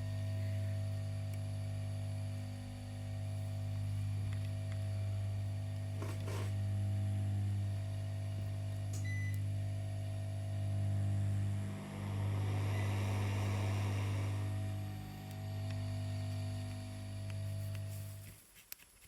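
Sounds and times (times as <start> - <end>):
low electrical hum: 0.0 - 19.0
soft crackling sizzle: 12.8 - 19.0.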